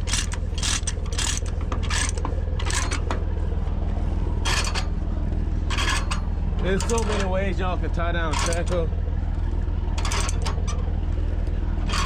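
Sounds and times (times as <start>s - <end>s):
chains clanking and rattling: 0.0s - 3.2s, 4.4s - 5.0s, 5.6s - 7.6s, 8.2s - 8.9s, 9.9s - 10.9s, 11.8s - 12.0s
engine idling: 0.0s - 12.0s.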